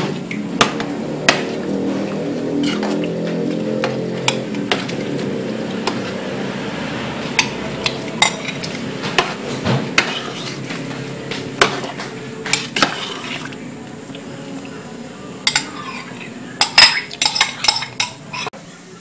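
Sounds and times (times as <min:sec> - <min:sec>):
utensil clinking against pot: 0:07.4 - 0:14.2, 0:15.4 - 0:18.5.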